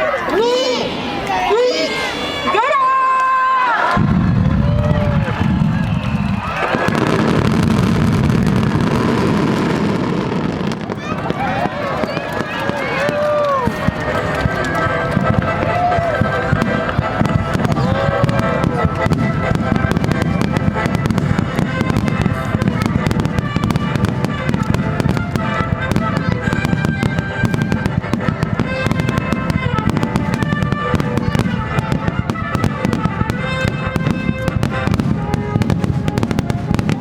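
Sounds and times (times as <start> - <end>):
fireworks bangs and crackling: 3.9 - 37.0
music playing: 10.8 - 37.0.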